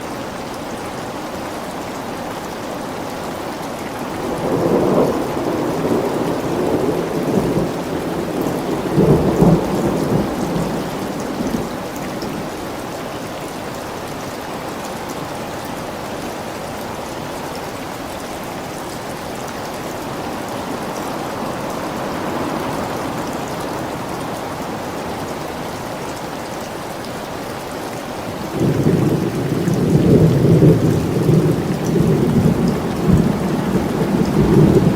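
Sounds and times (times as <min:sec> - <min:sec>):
steady rain falling: 0:00.0 - 0:34.9
rolling thunder: 0:28.5 - 0:34.9.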